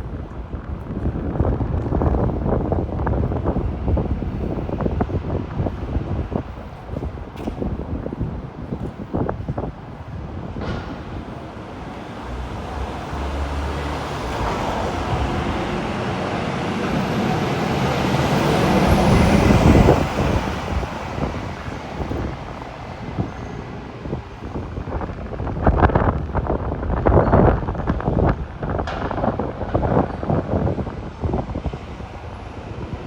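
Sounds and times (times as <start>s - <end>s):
city street traffic: 0.0s - 33.0s
wind buffeting microphone: 0.0s - 33.0s
vehicle passing: 12.1s - 22.2s.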